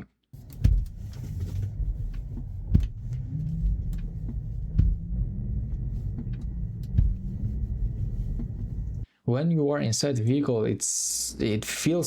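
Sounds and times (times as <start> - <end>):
low rumble of moving car: 0.4 - 9.0
car drive unit knocking: 2.1 - 9.0.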